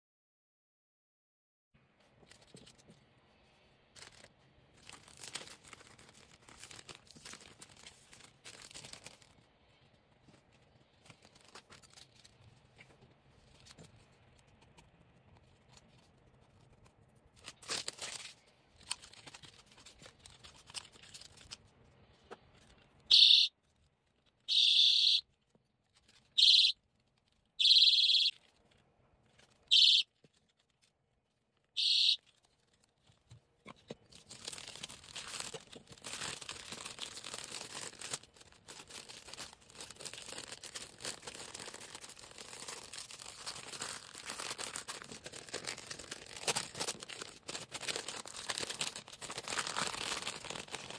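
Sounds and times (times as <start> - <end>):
plastic packaging crinkling: 3.8 - 14.1, 15.6 - 50.9
personal alarm shrieking: 23.1 - 23.5, 24.5 - 25.2, 26.4 - 26.8, 27.6 - 28.3, 29.7 - 30.0, 31.8 - 32.2.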